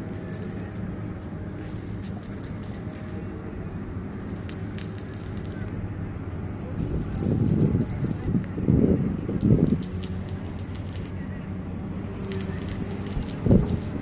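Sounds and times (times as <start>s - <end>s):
clicks and crackles: 0.0s - 3.3s, 4.2s - 5.8s, 6.6s - 8.5s, 9.3s - 11.2s, 12.2s - 14.0s.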